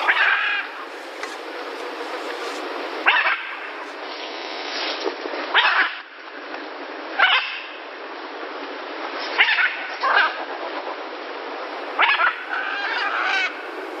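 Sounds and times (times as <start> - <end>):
animal yelping calls: 0.0 - 4.0, 11.9 - 14.0
steady background hiss: 0.0 - 14.0.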